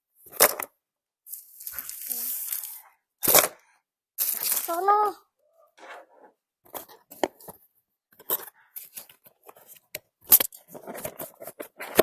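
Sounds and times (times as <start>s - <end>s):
plastic packaging rustling: 1.4s - 3.5s, 4.2s - 5.0s.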